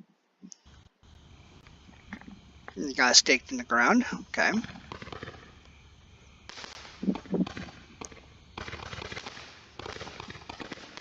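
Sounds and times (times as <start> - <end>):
roman candle crackling and hissing: 0.5 - 11.0.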